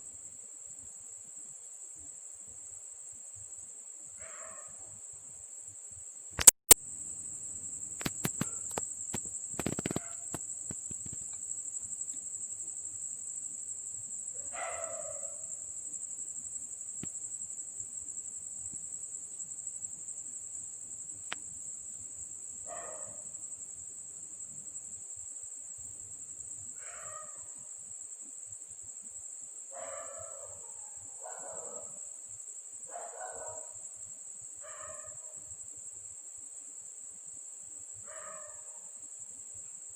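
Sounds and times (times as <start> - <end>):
crickets chirring: 0.0 - 39.9
sharp clicks: 6.4 - 6.8, 8.0 - 11.4.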